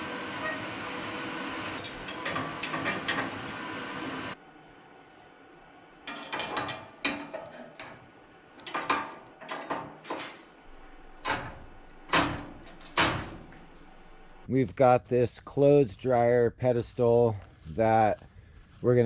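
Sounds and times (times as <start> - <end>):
metal parts clanking: 6.1 - 14.4.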